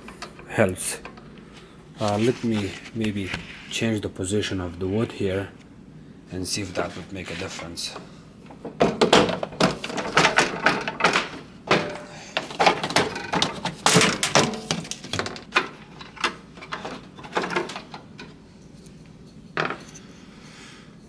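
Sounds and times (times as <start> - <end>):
plastic and wood parts knocking: 8.5 - 18.3.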